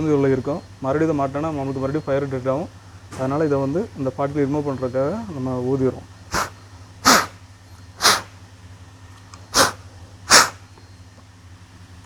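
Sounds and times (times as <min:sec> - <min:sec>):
sharp puffs of breath: 0:06.3 - 0:08.4, 0:09.5 - 0:10.7.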